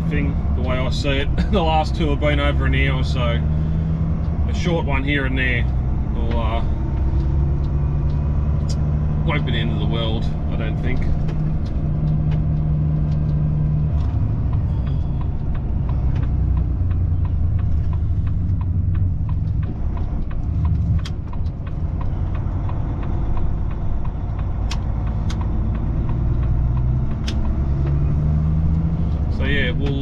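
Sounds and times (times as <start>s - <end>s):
truck diesel engine drone: 0.0s - 30.0s
light regular ticking: 0.1s - 30.0s
sharp clicks: 5.3s - 9.2s, 10.8s - 30.0s.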